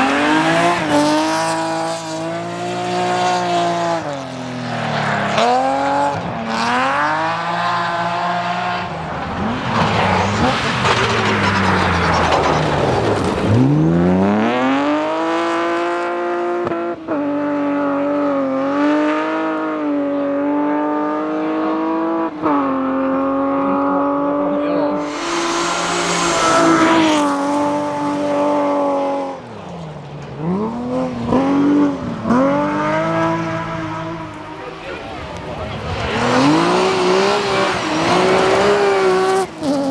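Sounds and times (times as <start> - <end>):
rally car engine revving: 0.0 - 39.9
spray hiss: 24.9 - 28.9.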